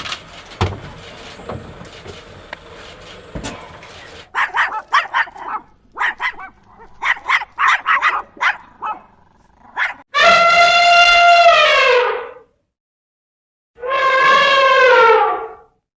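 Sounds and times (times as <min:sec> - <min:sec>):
animal barking yelps: 0:03.8 - 0:12.4
long horn-like animal call: 0:10.2 - 0:12.4, 0:13.8 - 0:15.7.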